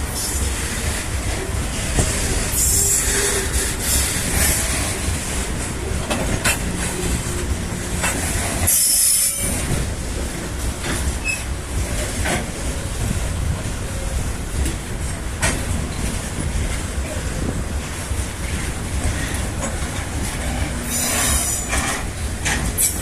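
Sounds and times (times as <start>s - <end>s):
freight train rumbling: 0.0s - 23.0s
wheels clicking over rail joints: 0.0s - 23.0s
high wheel squeal: 2.3s - 4.9s, 8.4s - 9.8s, 11.2s - 11.6s, 20.6s - 22.1s, 22.7s - 23.0s.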